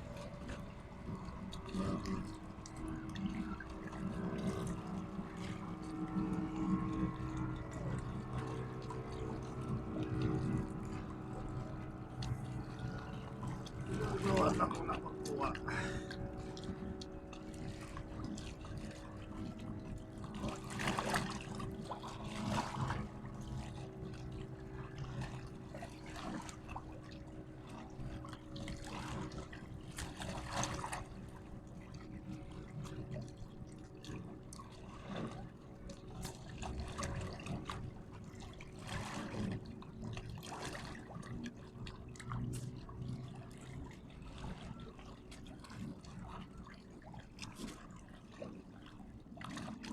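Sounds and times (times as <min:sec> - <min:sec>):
steady low hum: 0:00.0 - 0:49.9
water trickling and splashing: 0:00.0 - 0:49.9.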